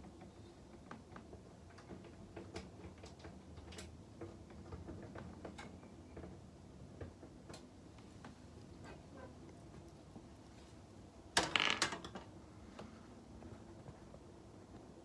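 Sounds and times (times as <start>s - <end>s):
faint clicks and light taps: 0.0s - 11.0s
low background hum: 0.0s - 15.0s.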